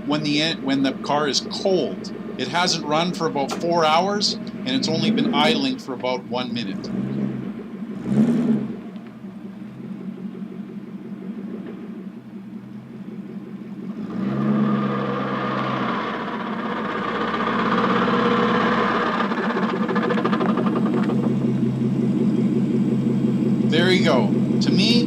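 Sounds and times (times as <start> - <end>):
car engine idling: 0.0 - 25.0
rapid ratcheting clatter: 16.5 - 21.4.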